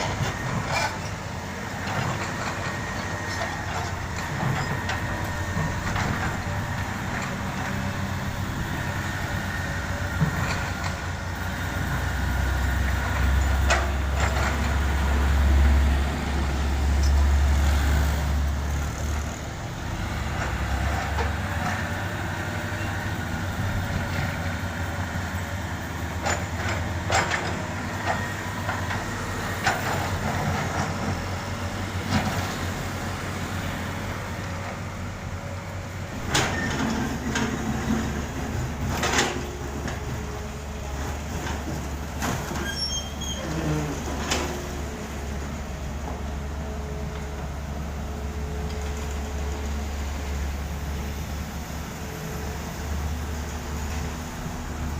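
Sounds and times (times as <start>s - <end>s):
diesel machinery running: 0.0s - 54.9s.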